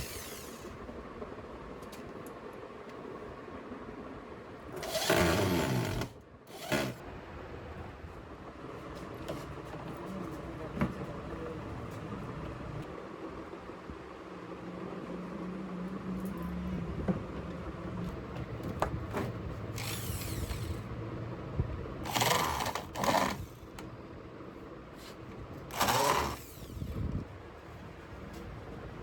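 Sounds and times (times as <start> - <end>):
power tool bursts: 0.0 - 0.8, 4.8 - 7.0, 19.8 - 20.8, 22.0 - 23.7, 25.7 - 27.0.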